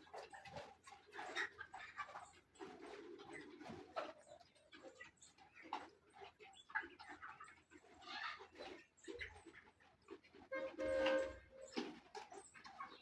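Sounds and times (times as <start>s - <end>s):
chickens cheeping and clucking: 0.0s - 13.0s.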